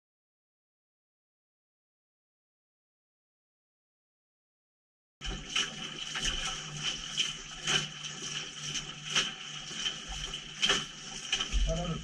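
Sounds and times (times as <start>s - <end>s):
knocks and splashes: 5.2s - 12.0s
water sloshing in washing machine: 5.2s - 12.0s.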